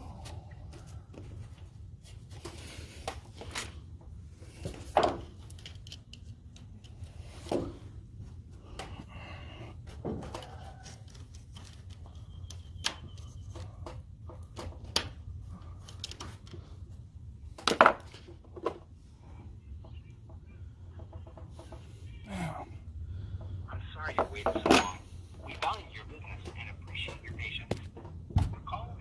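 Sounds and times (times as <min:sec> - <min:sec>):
steady low hum: 0:11.0 - 0:29.0
objects knocking and clicking: 0:17.6 - 0:18.8.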